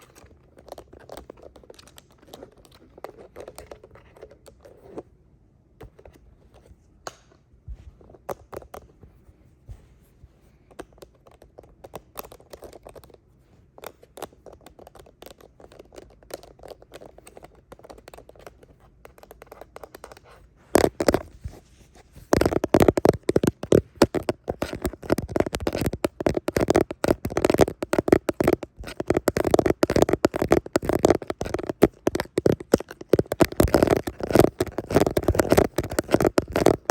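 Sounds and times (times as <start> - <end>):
fingernails scratching rapidly: 22.2 - 36.9.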